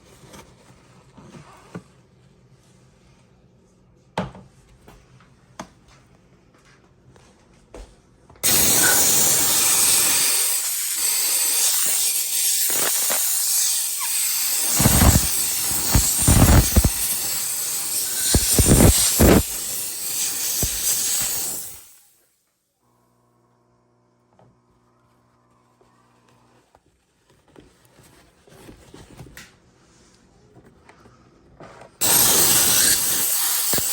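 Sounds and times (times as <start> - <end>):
steam cleaner hissing: 8.4 - 22.0, 32.0 - 33.9.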